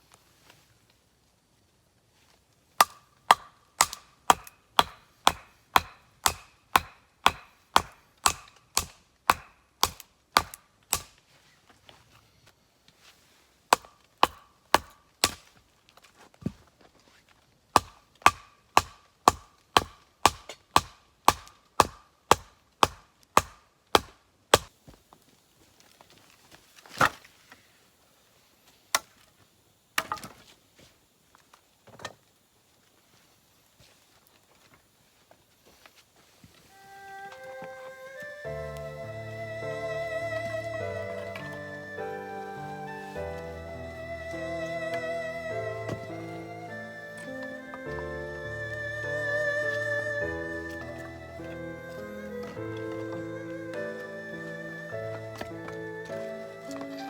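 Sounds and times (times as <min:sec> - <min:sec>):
metal tool striking wood: 0:02.8 - 0:11.2, 0:17.8 - 0:24.7.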